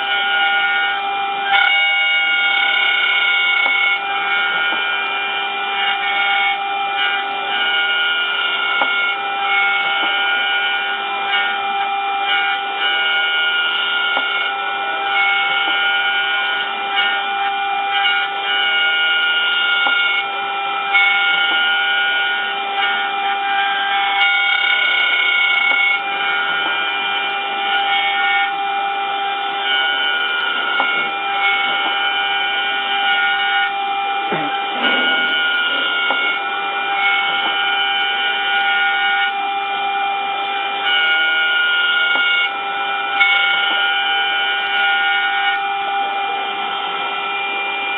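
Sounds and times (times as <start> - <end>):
motor tones changing pitch: 0.0 - 47.9
spindle whine: 0.0 - 47.9.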